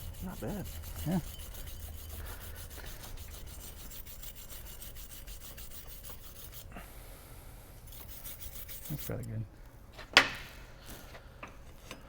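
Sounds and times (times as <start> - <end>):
cloth rubbing on metal pipe: 0.0 - 6.7, 7.9 - 9.2
steady low hum: 0.0 - 10.9.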